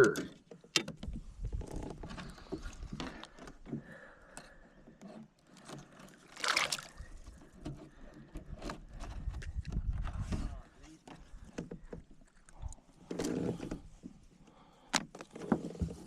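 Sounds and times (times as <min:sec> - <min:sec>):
water lapping around kayak: 0:04.8 - 0:09.2.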